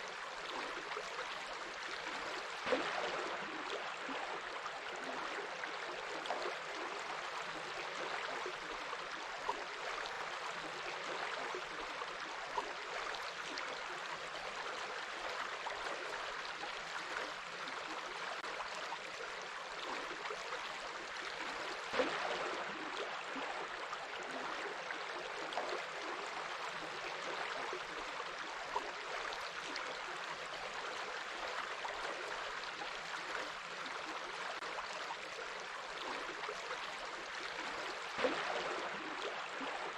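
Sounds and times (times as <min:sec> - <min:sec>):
water splashes: 0:00.0 - 0:08.4, 0:19.8 - 0:39.9
stream running and gurgling: 0:00.0 - 0:39.9.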